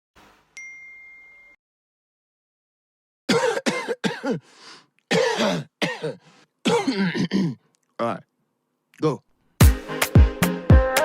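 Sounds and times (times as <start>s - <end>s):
person coughing: 3.3s - 4.5s, 5.1s - 7.7s.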